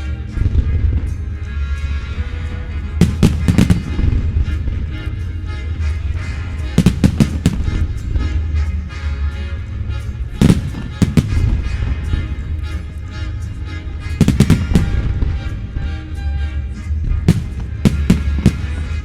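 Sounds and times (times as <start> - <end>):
fireworks bangs: 2.7 - 8.5, 10.4 - 16.0, 17.2 - 19.0.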